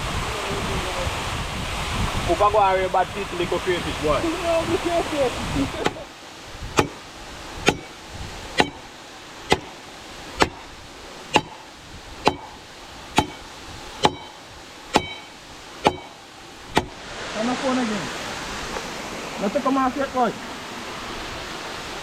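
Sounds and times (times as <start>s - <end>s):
waterfall rushing: 0.0s - 22.0s
knife chopping on board: 6.8s - 7.0s, 7.6s - 8.0s, 8.6s - 8.8s, 9.5s - 9.8s, 10.4s - 10.7s, 11.3s - 11.6s, 12.2s - 12.6s, 13.2s - 16.2s, 16.8s - 17.0s.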